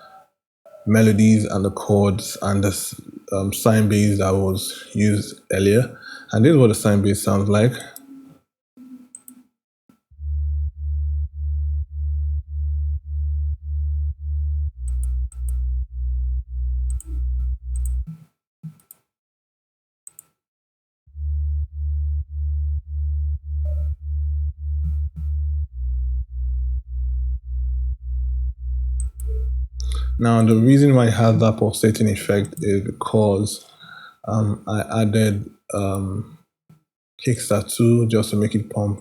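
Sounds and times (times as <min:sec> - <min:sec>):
pulsing sine bass: 0:10.1 - 0:18.2, 0:21.1 - 0:30.2.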